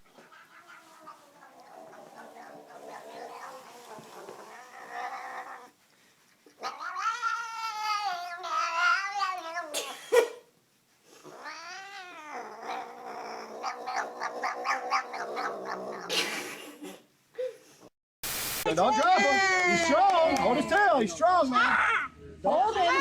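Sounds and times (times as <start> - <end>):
quieter cat sounds: 0.0 - 9.9, 11.1 - 16.1
cat yowling: 0.1 - 5.8, 6.6 - 9.9, 11.4 - 16.1.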